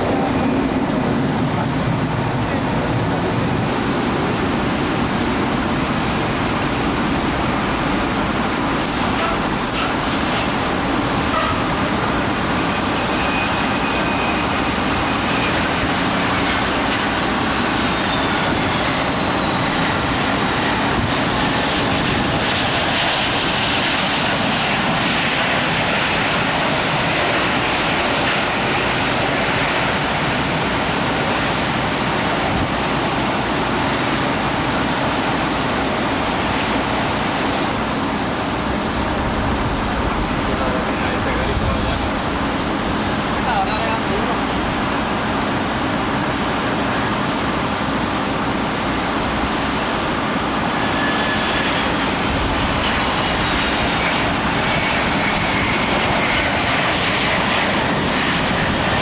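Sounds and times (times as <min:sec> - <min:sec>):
jet aircraft engines: 0:00.0 - 0:59.0
heavy rain: 0:34.4 - 0:51.4.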